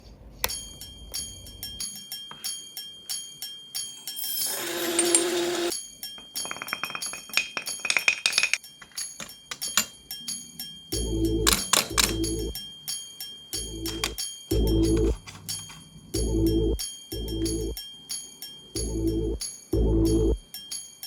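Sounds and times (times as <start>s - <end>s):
glass and metal clinking: 3.9s - 10.5s, 11.3s - 12.6s, 13.6s - 15.9s
rattling clicks: 9.2s - 10.0s, 11.5s - 12.4s, 13.8s - 14.2s.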